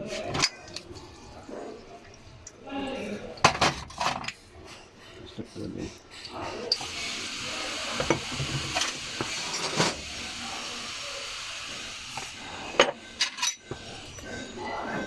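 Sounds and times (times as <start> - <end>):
spray hissing: 6.8 - 12.8.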